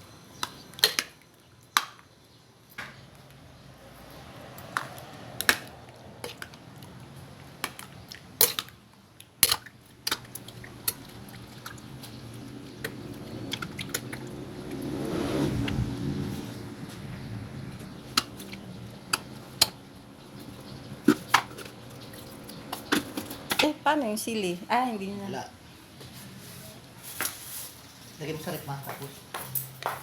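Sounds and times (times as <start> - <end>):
wet stirring: 4.6 - 14.9, 17.8 - 23.6.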